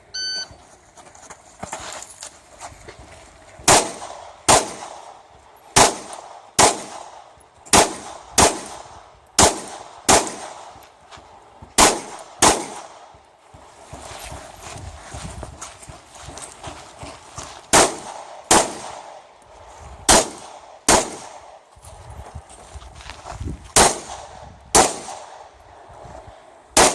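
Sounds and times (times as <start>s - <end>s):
pistol shots: 3.7s - 5.2s, 5.8s - 10.7s, 11.8s - 13.0s, 17.7s - 19.2s, 20.1s - 21.6s, 23.8s - 25.4s.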